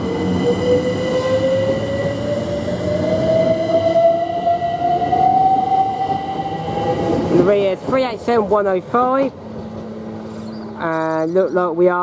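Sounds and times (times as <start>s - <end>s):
train rumble: 0.0s - 12.0s.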